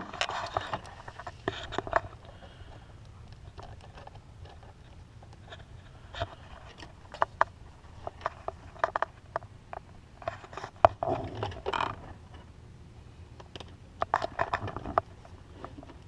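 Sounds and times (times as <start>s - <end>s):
scraping and rustling: 0.0s - 12.5s.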